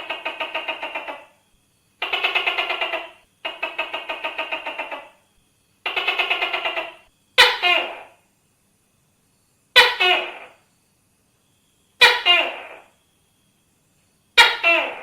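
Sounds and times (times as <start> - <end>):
gecko rattling call: 0.0 - 8.3, 9.7 - 10.8, 11.9 - 13.1, 14.3 - 15.0.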